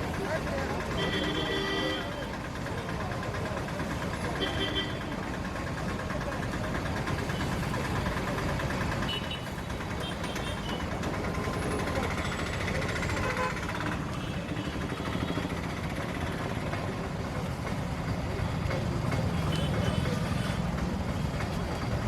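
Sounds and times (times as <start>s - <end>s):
vehicle engines running: 0.0s - 22.0s
faint voices: 10.9s - 22.0s.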